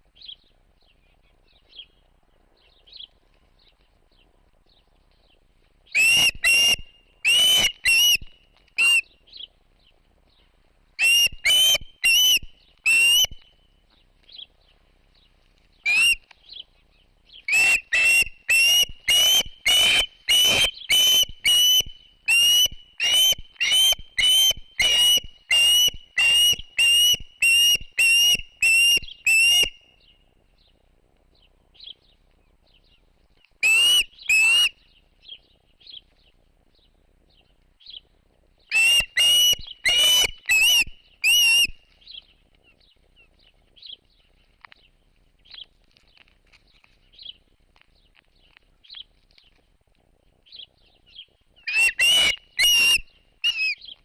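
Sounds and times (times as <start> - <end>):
bird whistling calls: 5.9 - 9.1, 11.0 - 13.6, 15.8 - 16.2, 17.4 - 29.8, 33.6 - 34.8, 38.7 - 41.8, 51.1 - 54.0.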